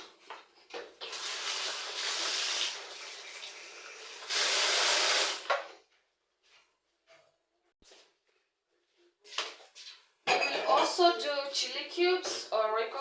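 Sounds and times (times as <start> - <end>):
water running from a tap: 1.0 - 5.5.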